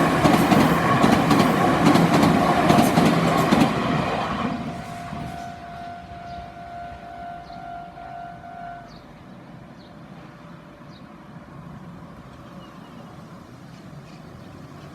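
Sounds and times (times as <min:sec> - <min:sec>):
train rumble: 0:00.0 - 0:10.8
level crossing alarm tone: 0:04.8 - 0:08.8.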